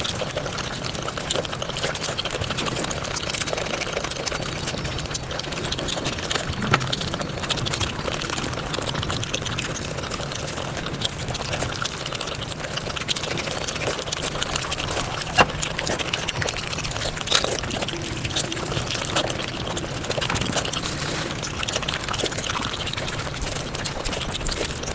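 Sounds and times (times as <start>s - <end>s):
chewing and smacking: 0.0s - 24.9s.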